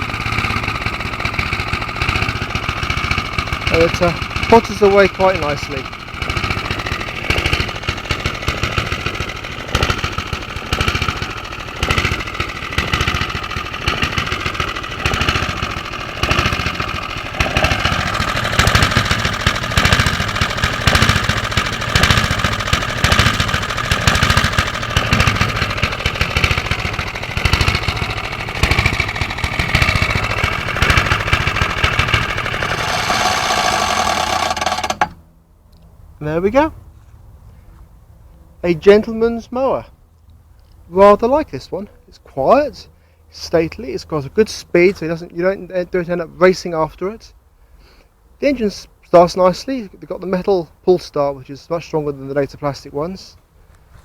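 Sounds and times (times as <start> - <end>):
lawn mower engine running: 0.0 - 35.6.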